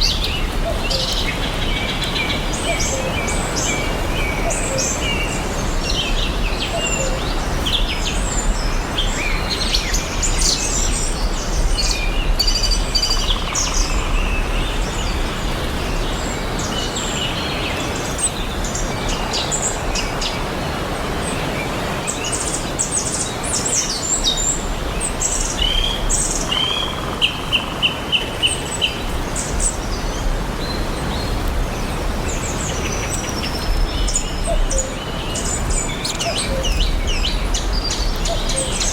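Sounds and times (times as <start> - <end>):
birds chirping: 22.4 - 38.9.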